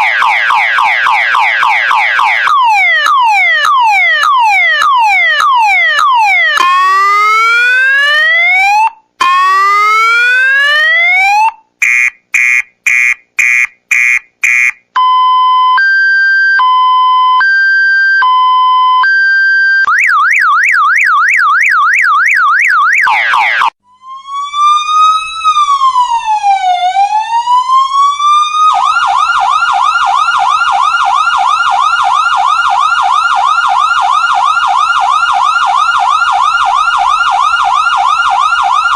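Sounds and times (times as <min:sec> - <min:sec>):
electronic siren whooping: 0:00.0 - 0:38.9
siren fast yelp: 0:00.0 - 0:38.9
siren wail: 0:00.0 - 0:38.9
two-tone hi-lo siren: 0:00.0 - 0:38.9
short beeps: 0:11.8 - 0:15.6.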